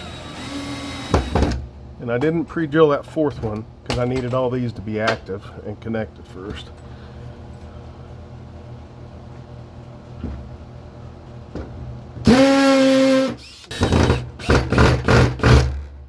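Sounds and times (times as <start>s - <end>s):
electric drill drilling into wood: 0.0s - 1.6s, 12.3s - 15.8s.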